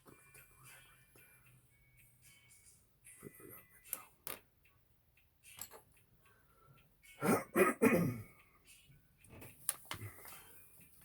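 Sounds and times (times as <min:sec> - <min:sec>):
man coughing: 0:07.2 - 0:08.4.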